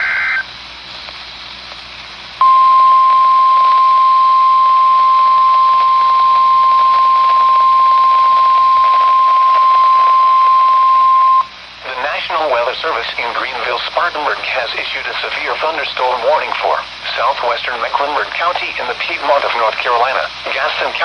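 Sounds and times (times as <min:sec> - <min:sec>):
radio receiver hiss: 0:00.0 - 0:21.0
steady alarm tone: 0:02.4 - 0:11.5.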